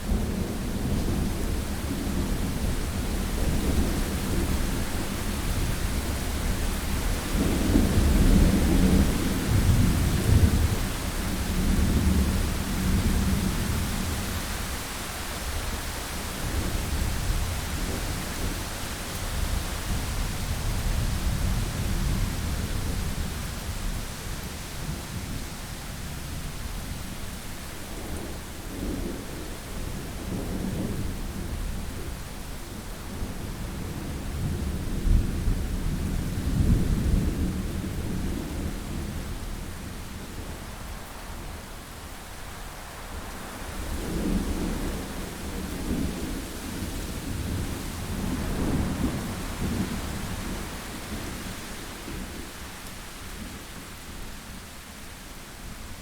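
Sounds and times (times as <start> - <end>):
low rolling thunder: 0.0 - 14.3, 27.8 - 40.7, 43.6 - 52.6.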